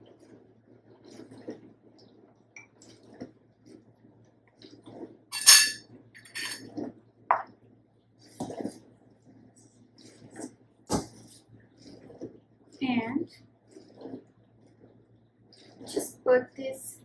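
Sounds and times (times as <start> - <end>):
metal kitchenware clinking: 5.3 - 6.6
handling noise: 5.3 - 6.9.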